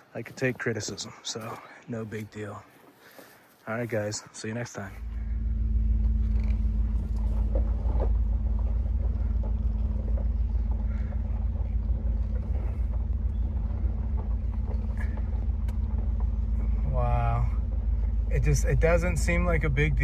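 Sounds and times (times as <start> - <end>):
vehicle engine humming: 3.0 - 20.0.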